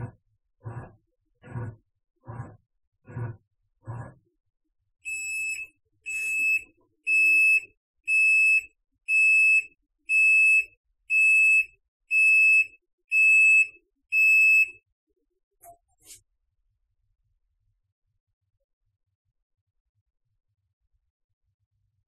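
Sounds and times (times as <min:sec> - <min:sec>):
washing machine buzzer beeping: 0:05.1 - 0:14.8.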